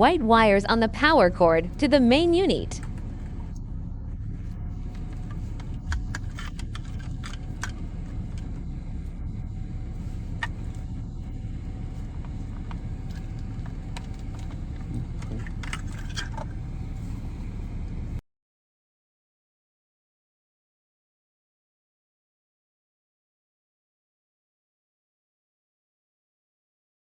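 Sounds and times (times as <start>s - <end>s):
low rumble: 0.0s - 18.2s
plugs and cables clicking: 4.9s - 8.6s, 12.2s - 16.7s.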